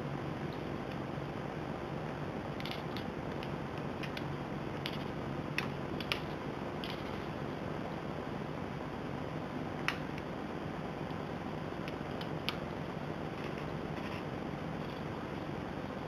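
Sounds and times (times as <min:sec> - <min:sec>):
steady hiss: 0:00.0 - 0:16.0.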